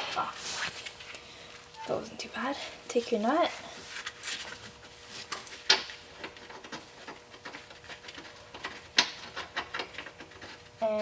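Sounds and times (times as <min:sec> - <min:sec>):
nut and bolt clicking: 0:05.7 - 0:10.5.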